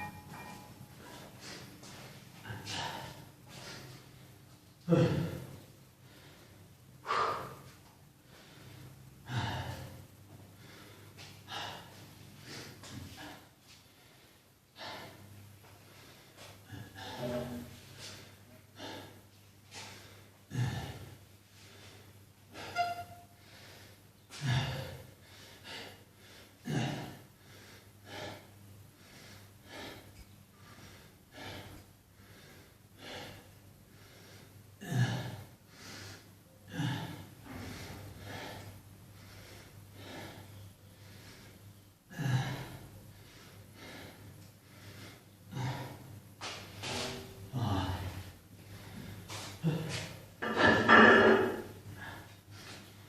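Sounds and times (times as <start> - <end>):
person breathing hard: 5.3 - 22.8, 23.4 - 46.7, 47.4 - 50.4, 51.4 - 53.0.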